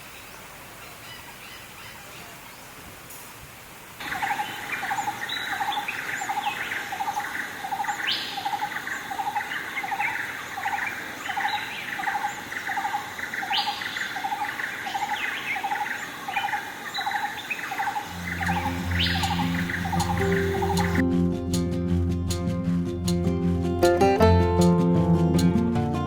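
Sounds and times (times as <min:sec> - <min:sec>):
birds chirping high: 0:04.0 - 0:21.0
rising bird call: 0:18.0 - 0:21.0.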